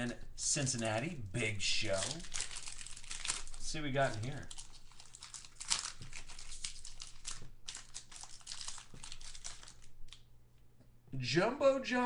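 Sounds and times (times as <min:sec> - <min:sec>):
wrapper crinkling and tearing: 0:01.7 - 0:10.3.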